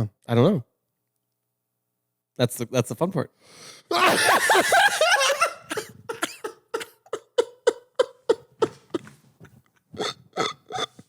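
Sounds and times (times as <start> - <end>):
man laughing hard: 3.9 - 11.0.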